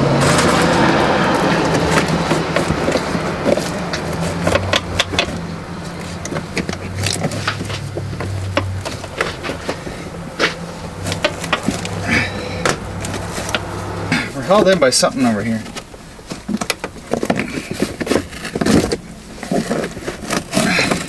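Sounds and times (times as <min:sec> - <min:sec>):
steady low hum: 0:00.0 - 0:14.8.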